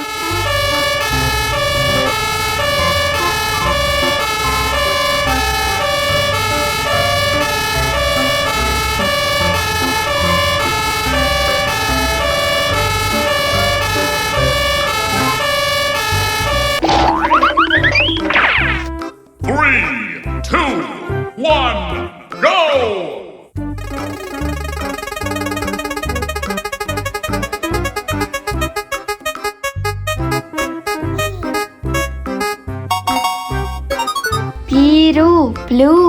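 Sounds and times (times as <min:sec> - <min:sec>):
police siren two-tone hi-lo: 0:00.0 - 0:18.9, 0:23.8 - 0:28.2
sweeping siren effect: 0:00.0 - 0:18.9.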